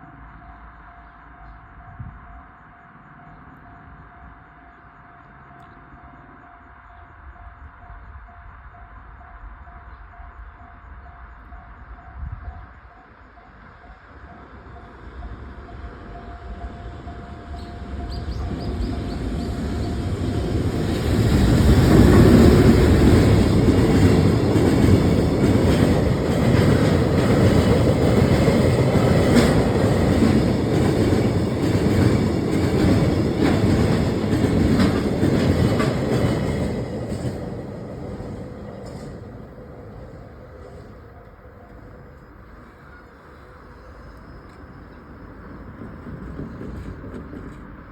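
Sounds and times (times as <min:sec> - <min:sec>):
train rumbling past: 0:00.0 - 0:47.9
train wheel clicks: 0:17.6 - 0:42.3.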